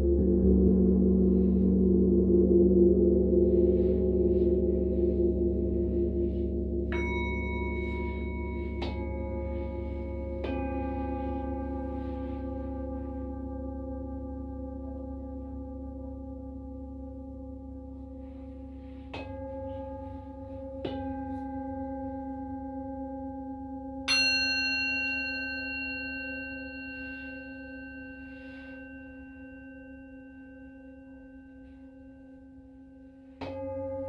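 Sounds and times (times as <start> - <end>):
singing bowls ringing: 0.0 - 34.0.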